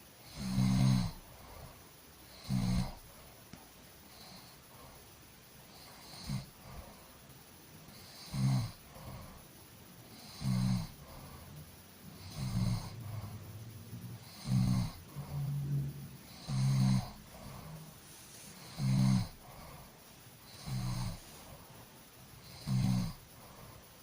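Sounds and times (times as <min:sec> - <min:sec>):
soft breaths: 0:00.0 - 0:24.0
person snoring: 0:00.2 - 0:01.7, 0:02.3 - 0:03.0, 0:07.9 - 0:09.4, 0:10.1 - 0:11.5, 0:12.2 - 0:13.5, 0:14.2 - 0:21.6, 0:22.4 - 0:23.9.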